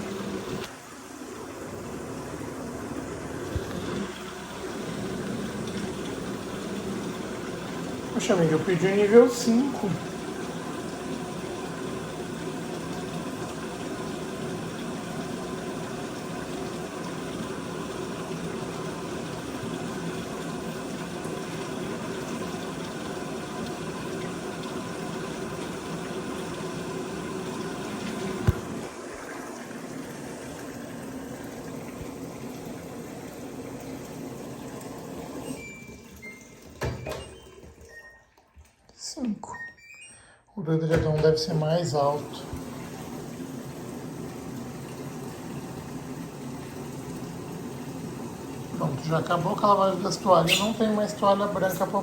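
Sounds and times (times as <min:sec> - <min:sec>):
washing machine filling with water: 0:00.0 - 0:52.0
washing machine click: 0:40.9 - 0:41.6.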